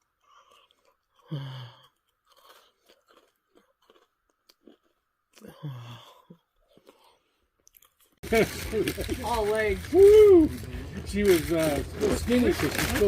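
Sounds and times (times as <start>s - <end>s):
chewing crunchy cookie: 0.0s - 9.9s.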